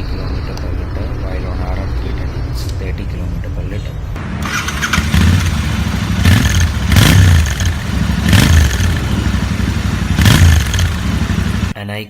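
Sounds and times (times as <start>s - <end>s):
motorcycle engine revving: 4.2s - 11.8s.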